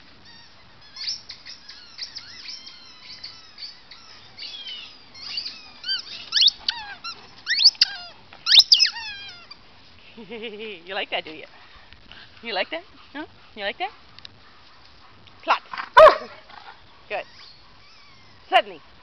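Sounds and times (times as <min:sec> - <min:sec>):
squeaky toy squeaks: 0:00.2 - 0:09.6.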